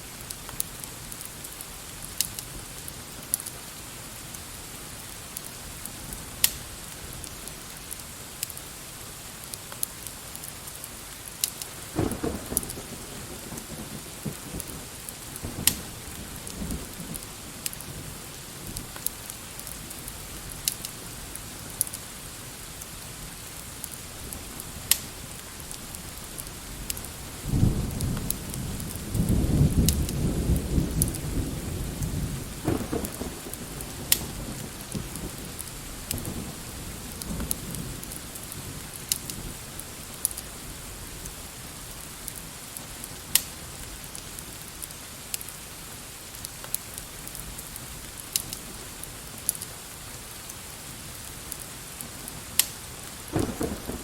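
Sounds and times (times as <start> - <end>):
rain hiss: 0.0 - 54.0
sharp crackles: 0.2 - 3.6, 4.2 - 8.7, 9.4 - 22.1, 22.7 - 27.2, 32.0 - 54.0
thunder rolling: 11.9 - 17.2, 27.4 - 38.1, 53.3 - 54.0.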